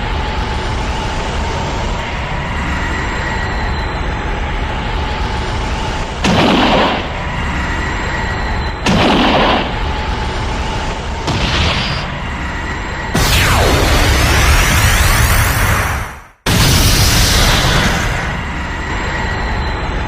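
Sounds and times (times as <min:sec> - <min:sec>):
thin high whine: 0:00.0 - 0:06.2, 0:06.9 - 0:16.4, 0:17.1 - 0:20.0
low rumble: 0:03.9 - 0:19.7
loud cartoon blasts: 0:06.2 - 0:07.4, 0:08.8 - 0:10.3, 0:11.2 - 0:12.3, 0:13.1 - 0:18.5.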